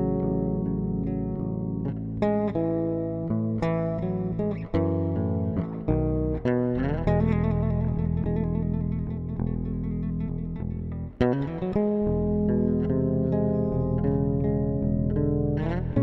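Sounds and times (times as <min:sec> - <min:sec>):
guitar background music: 0:00.0 - 0:16.0
steady bass line: 0:00.0 - 0:16.0.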